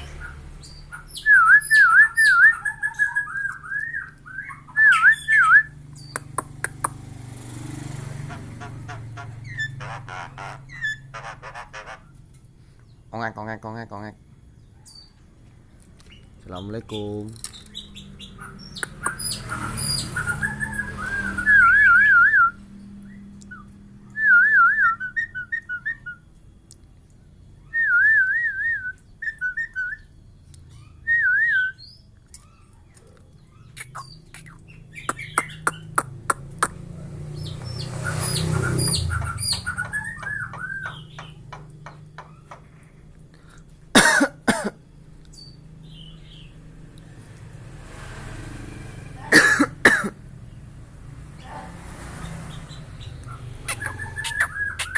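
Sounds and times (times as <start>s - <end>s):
myna whistling: 0.0s - 7.0s, 17.8s - 26.2s, 27.6s - 30.1s, 30.7s - 32.1s, 33.7s - 36.8s, 37.4s - 41.4s, 53.3s - 54.9s
bird clicks and squawks: 6.0s - 7.0s, 17.3s - 20.3s, 32.3s - 36.9s, 53.3s - 54.9s.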